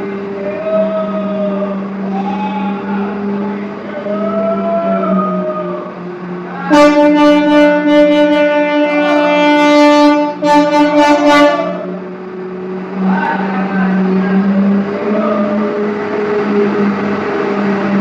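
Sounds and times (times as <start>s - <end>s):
diesel engine running: 0.0s - 18.0s
truck horn blasts: 6.7s - 13.1s.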